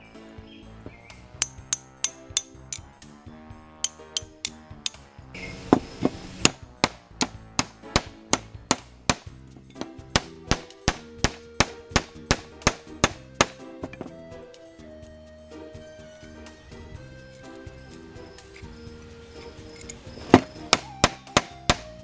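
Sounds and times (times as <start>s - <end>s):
hammer on chisel metallic clangs: 1.4s - 2.8s, 6.5s - 14.1s, 20.4s - 22.0s.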